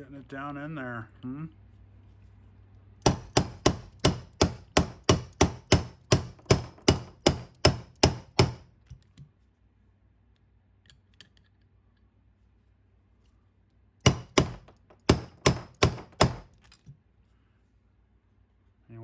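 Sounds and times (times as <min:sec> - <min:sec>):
hammer striking a socket: 0:03.0 - 0:09.2, 0:14.1 - 0:16.8.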